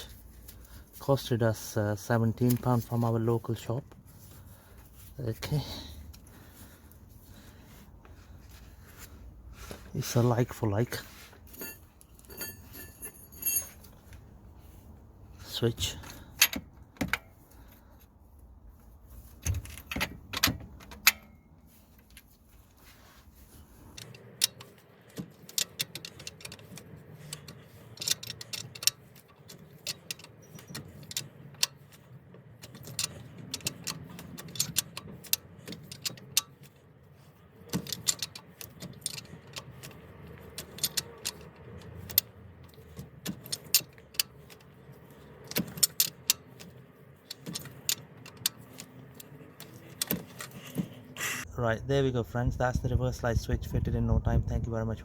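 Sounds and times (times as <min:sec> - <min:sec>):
hand tools clinking on metal: 0:10.0 - 0:14.2.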